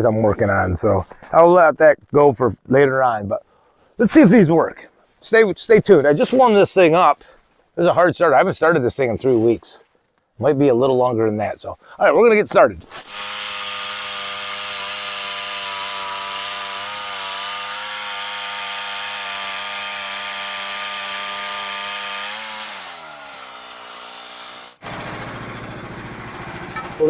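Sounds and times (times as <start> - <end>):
small gasoline engine running: 13.1 - 27.0.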